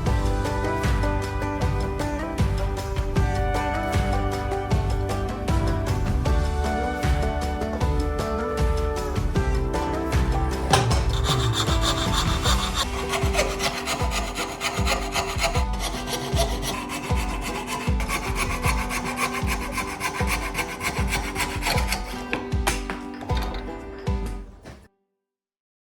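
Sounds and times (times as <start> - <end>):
hand saw cutting wood: 10.8 - 23.8.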